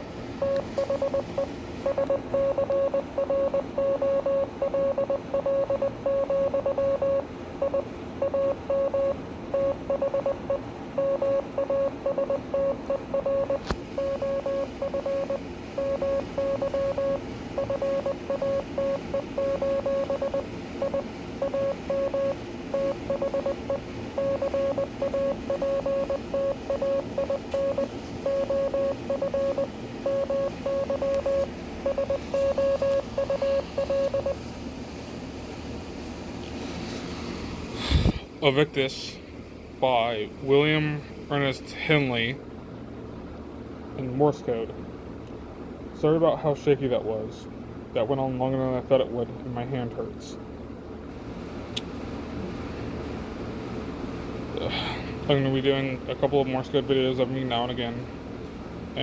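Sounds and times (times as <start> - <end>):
morse code beeps: 0.4 - 34.4.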